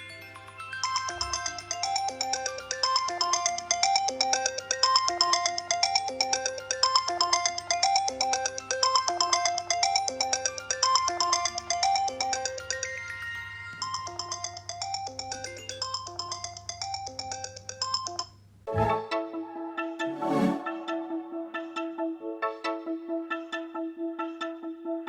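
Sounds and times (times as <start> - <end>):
phone ringtone melody: 0.0 - 18.3.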